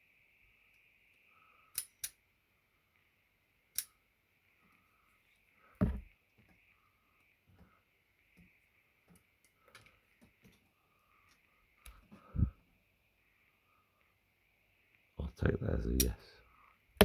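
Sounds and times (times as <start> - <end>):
dull knock: 5.8 - 6.1.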